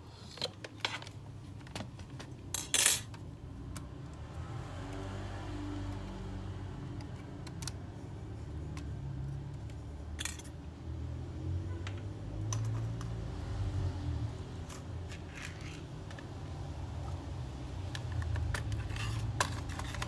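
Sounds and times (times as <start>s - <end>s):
clicks and clinks of small parts: 9.6s - 10.6s, 17.9s - 20.0s.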